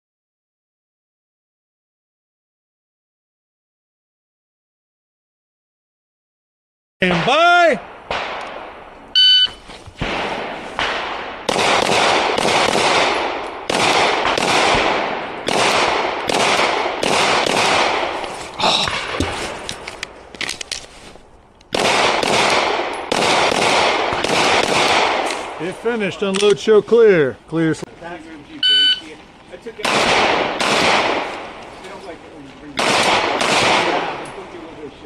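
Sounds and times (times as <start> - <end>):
pistol shots echoing: 7.1 - 8.9, 10.0 - 18.2, 21.7 - 25.6, 29.8 - 31.7, 32.8 - 34.5.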